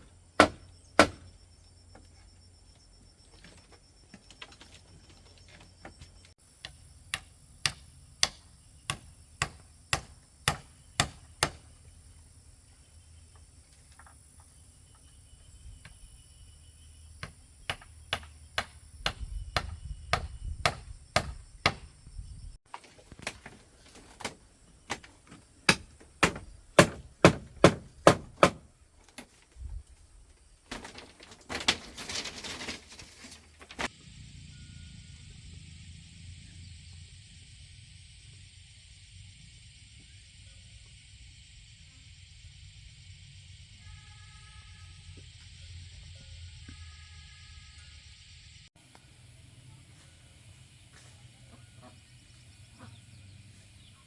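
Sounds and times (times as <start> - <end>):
hand tool striking wood: 0.4 - 1.3, 6.6 - 11.7, 17.2 - 21.9, 24.2 - 28.7.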